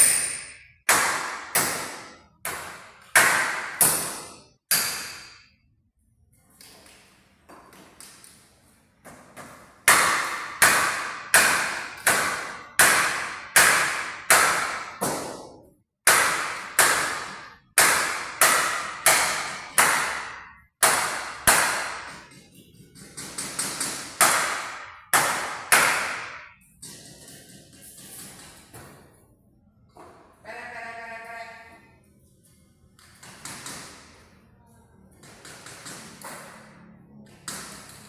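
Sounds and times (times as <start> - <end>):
sharp ringing knocks: 0.0 - 5.6.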